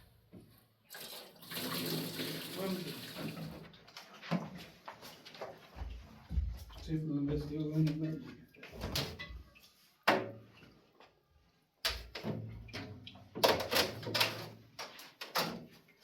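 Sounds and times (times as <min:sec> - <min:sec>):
objects knocking and clattering: 0:11.9 - 0:15.8.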